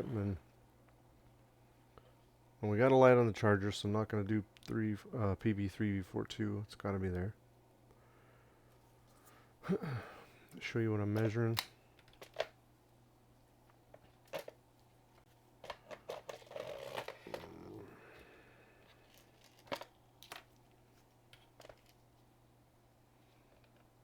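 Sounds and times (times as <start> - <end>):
low steady hum: 0.0 - 24.0
small items clicking on workbench: 18.9 - 22.0.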